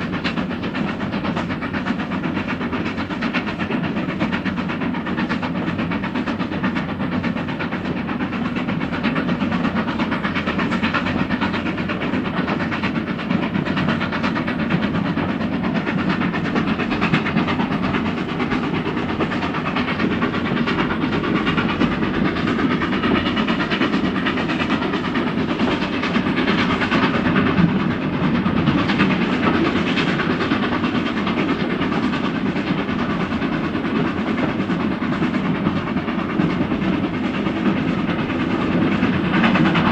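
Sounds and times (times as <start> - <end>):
steam train running: 0.0 - 39.9.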